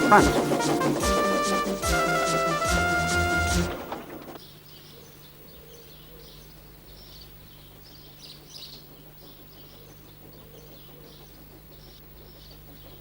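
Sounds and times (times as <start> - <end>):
faint birdsong chirps: 3.8 - 13.0.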